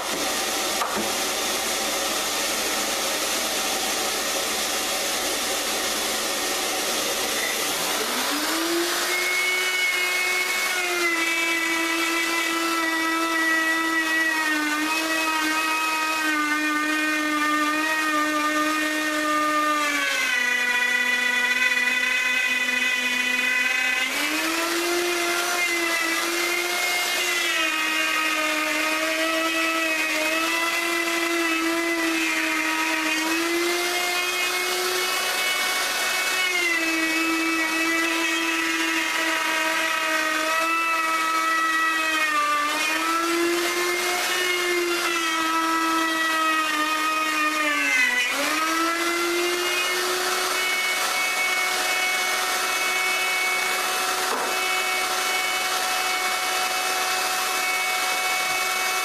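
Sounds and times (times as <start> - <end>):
electric router cutting wood: 0.0 - 59.0.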